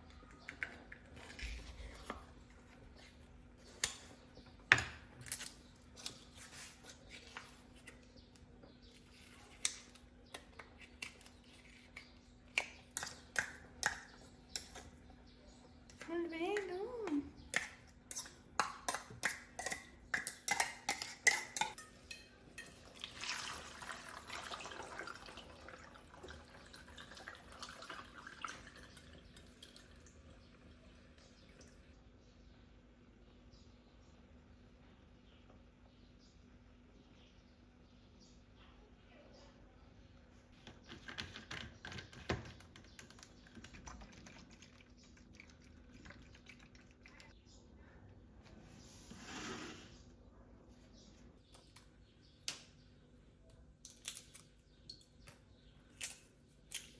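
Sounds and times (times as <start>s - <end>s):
liquid pouring: 22.8s - 30.3s, 44.0s - 47.3s.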